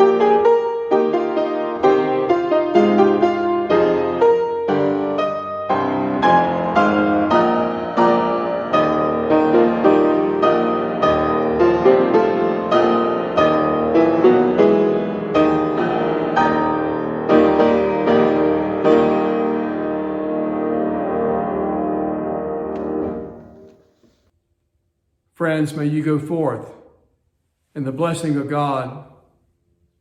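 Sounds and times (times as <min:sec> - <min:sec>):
slow piano chords: 0:00.0 - 0:23.8.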